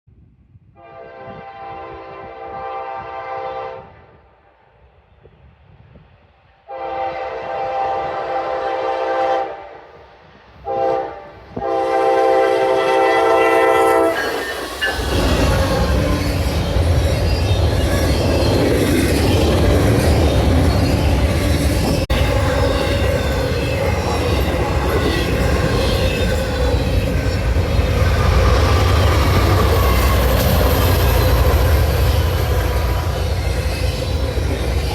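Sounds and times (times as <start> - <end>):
locomotive horn: 0.8 - 4.1, 6.7 - 9.8, 10.6 - 16.6
train passing rumble: 0.8 - 34.9.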